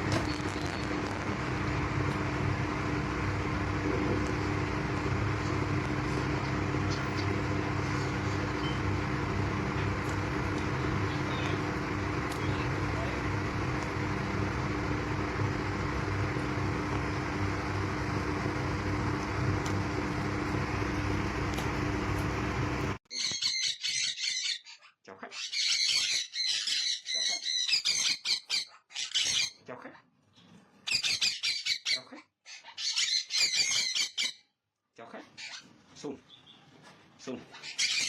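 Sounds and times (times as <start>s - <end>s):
motor droning hum: 0.0s - 23.0s
parrot talking squawkily: 23.1s - 29.6s, 30.9s - 34.3s.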